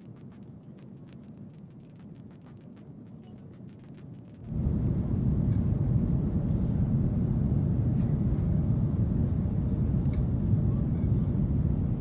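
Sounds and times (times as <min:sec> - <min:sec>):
aircraft cabin rumble: 0:04.4 - 0:12.0.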